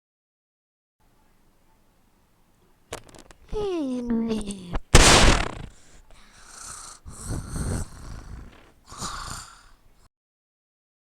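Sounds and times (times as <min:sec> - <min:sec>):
snoring with whistling hiss: 0:05.5 - 0:09.9.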